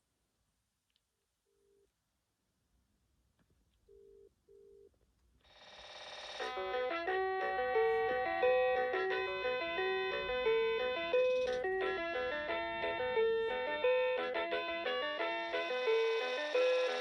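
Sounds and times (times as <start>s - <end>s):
electronic ringtone melody: 5.6s - 17.0s.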